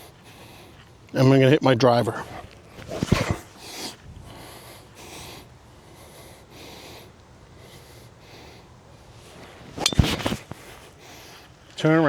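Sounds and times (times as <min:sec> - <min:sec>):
wind blowing over microphone: 0:02.2 - 0:04.5.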